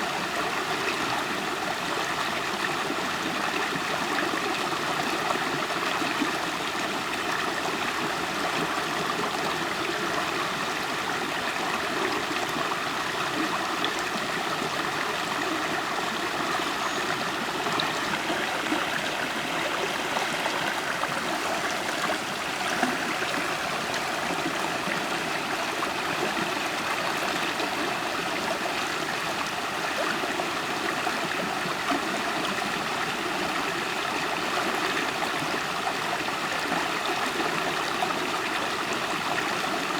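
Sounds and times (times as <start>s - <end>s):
stream flowing over rocks: 0.0s - 39.9s.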